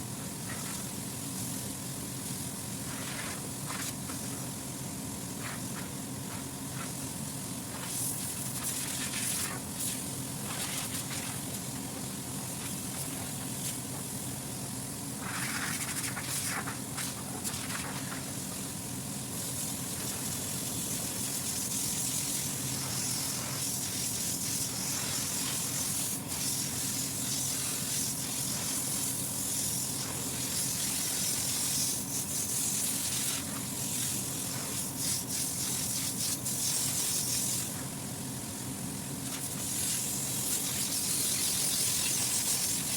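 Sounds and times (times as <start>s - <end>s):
spraying hiss: 19.3s - 37.8s, 39.2s - 42.9s.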